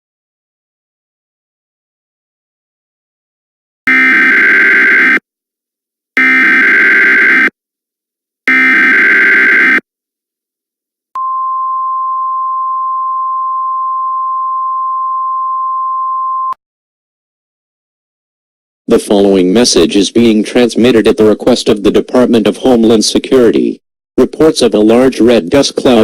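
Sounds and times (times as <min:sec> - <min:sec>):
steady attention tone: 0:06.2 - 0:07.5.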